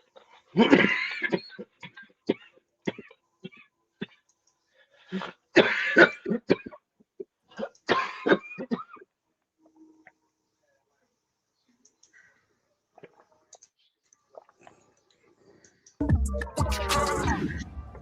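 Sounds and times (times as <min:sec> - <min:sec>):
person coughing: 0:00.5 - 0:04.2, 0:05.1 - 0:06.8, 0:07.5 - 0:09.0
throat clearing: 0:00.5 - 0:04.3, 0:05.1 - 0:09.1.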